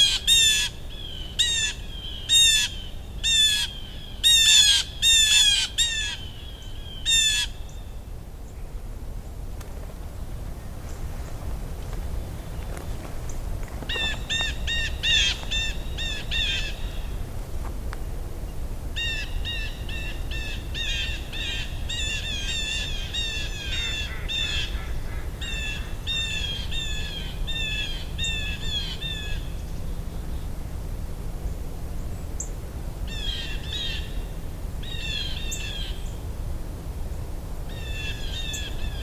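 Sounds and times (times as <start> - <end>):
bird harsh repeated calls: 0.0 - 7.8, 13.9 - 17.1, 19.0 - 29.5.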